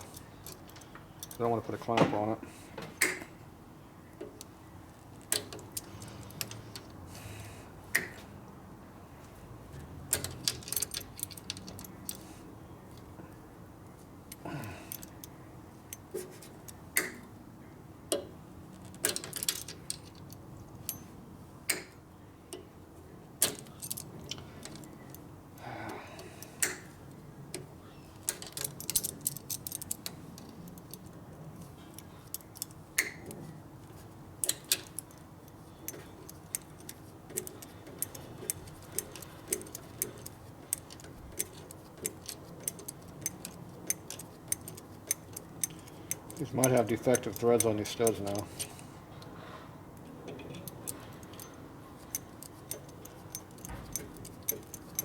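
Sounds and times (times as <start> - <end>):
metallic clicks of hand tools: 21.7 - 22.7, 23.4 - 31.2, 31.9 - 33.4, 34.4 - 49.3, 50.3 - 55.0.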